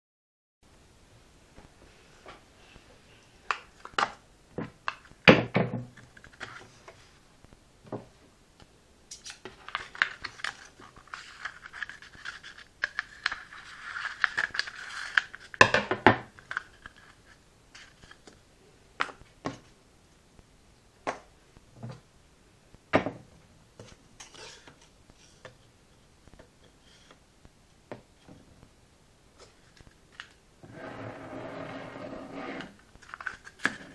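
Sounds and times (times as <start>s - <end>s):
scraping and rubbing: 30.6s - 33.4s.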